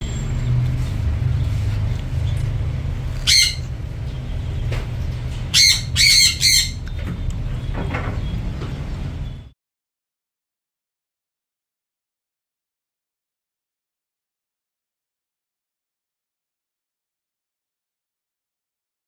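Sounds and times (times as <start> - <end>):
lovebirds squawking: 3.0 - 8.4.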